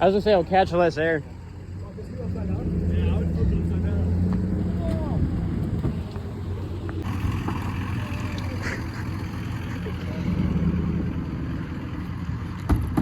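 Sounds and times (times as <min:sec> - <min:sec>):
vehicle engine rumbling: 0:00.0 - 0:13.0.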